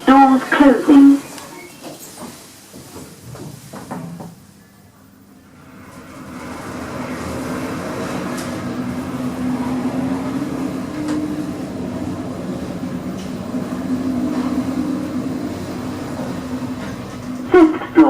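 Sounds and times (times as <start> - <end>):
lift rumble with low hum: 4.8 - 18.0.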